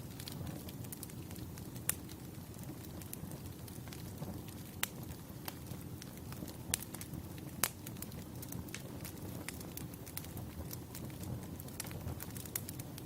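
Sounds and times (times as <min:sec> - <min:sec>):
wood fire crackling: 0:00.0 - 0:13.0.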